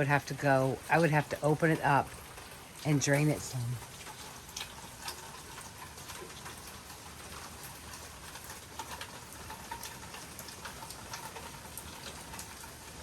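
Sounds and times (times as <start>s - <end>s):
light rain falling: 0.0s - 13.0s
raindrops ticking on surfaces: 0.0s - 13.0s.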